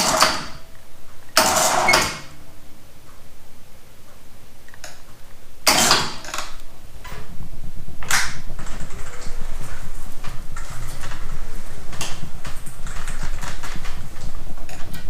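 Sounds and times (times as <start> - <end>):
low rumble: 6.5 - 15.0.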